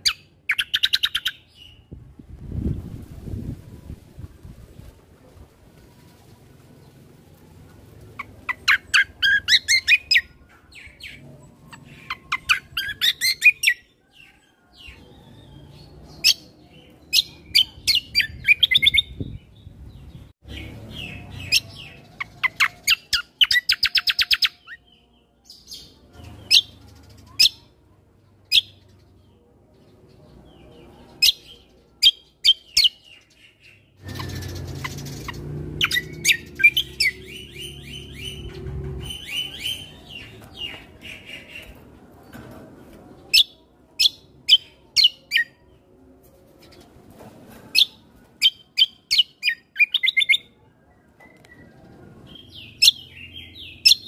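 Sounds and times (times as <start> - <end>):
songbird chirping and trilling: 0.0 - 54.0
low outdoor rumble: 1.7 - 12.8, 34.0 - 44.5.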